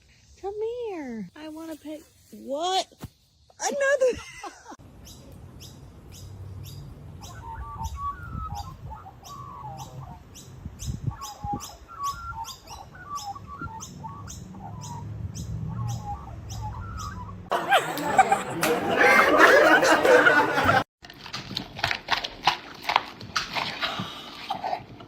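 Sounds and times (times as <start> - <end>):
birds chirping: 4.8 - 20.8
warbling bird calls: 5.0 - 18.4.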